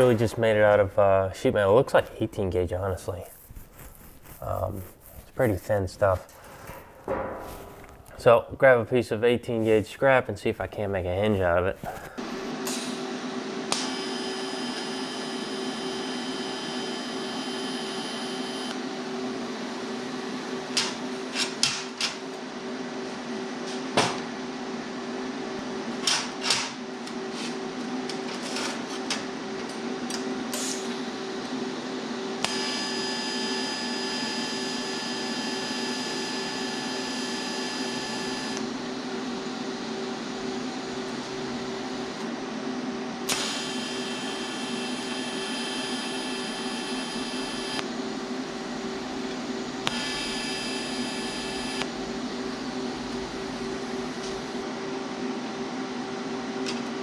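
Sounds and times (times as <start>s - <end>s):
metal knocks and clanks: 6.9s - 8.1s
shop machine drone: 11.6s - 57.0s.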